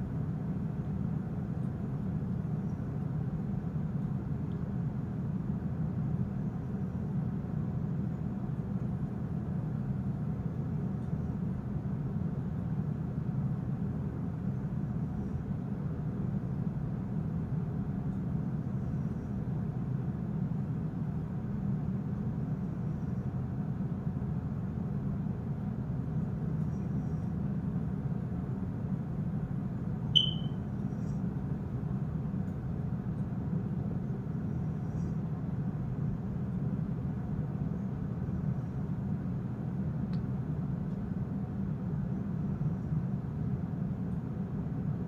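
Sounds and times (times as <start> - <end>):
brief high chirp: 30.2 - 30.6.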